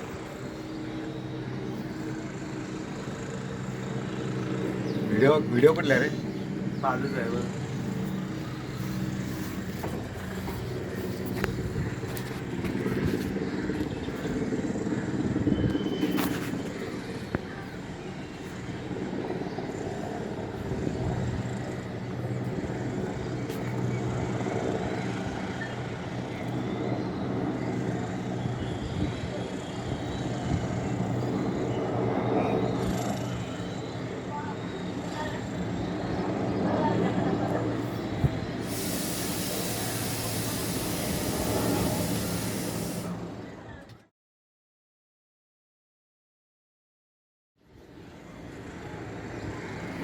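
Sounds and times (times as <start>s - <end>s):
helicopter flying by: 0.0s - 43.9s, 47.8s - 50.0s.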